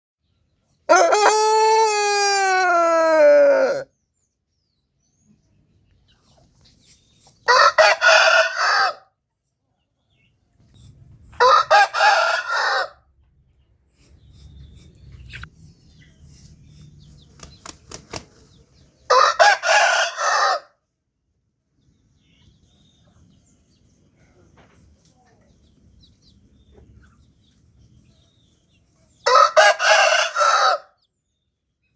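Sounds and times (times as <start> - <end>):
rooster crowing: 0.9 - 3.9, 7.5 - 9.0, 11.4 - 13.0, 19.1 - 20.7, 29.3 - 30.9.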